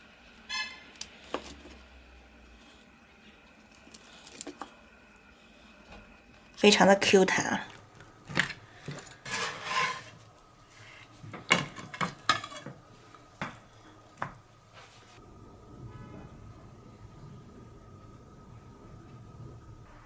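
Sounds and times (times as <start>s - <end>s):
kitchenware scraping: 8.3s - 10.3s, 11.3s - 13.6s
dishes and utensils clinking: 11.4s - 12.8s.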